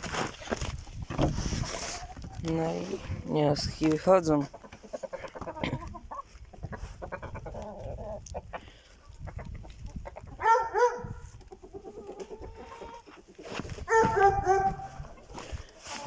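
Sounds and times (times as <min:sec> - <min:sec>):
hens clucking: 0:01.0 - 0:16.0.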